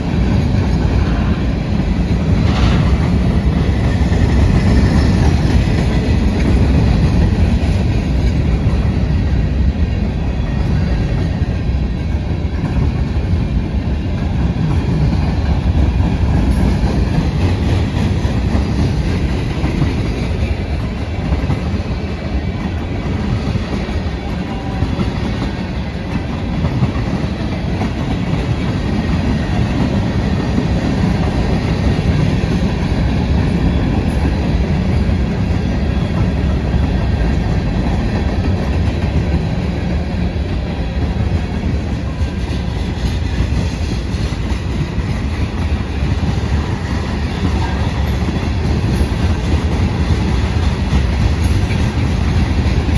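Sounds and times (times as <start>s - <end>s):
clickety-clack over track: 0.0s - 52.9s
train wheels rumbling on rails: 0.0s - 52.9s.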